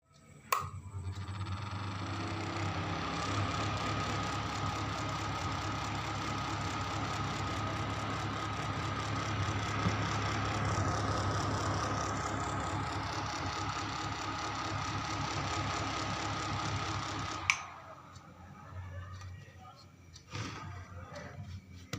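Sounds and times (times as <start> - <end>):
heater humming and whining: 0.1 - 21.9
heater switch click: 0.5 - 0.8, 17.4 - 17.7.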